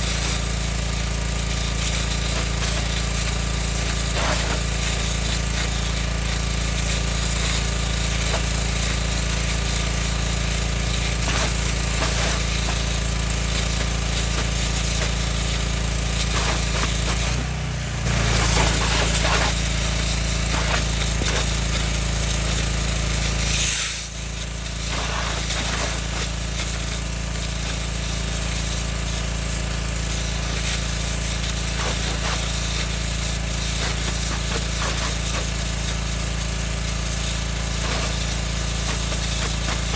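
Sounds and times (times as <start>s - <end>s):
pressure washer engine running: 0.0s - 39.9s
water jet hissing into soil: 0.0s - 39.9s.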